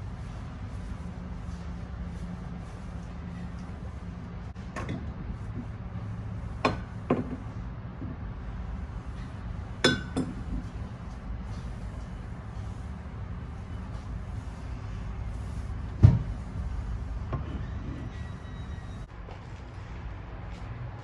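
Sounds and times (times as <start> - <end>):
steady low hum: 0.0 - 21.0
dishes clinking: 9.8 - 10.4.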